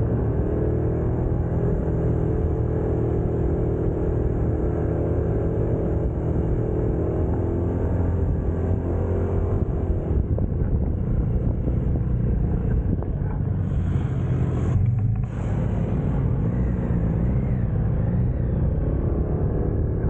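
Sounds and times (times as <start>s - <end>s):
motorcycle engine running: 0.0s - 20.0s
road and wind noise: 0.0s - 20.0s.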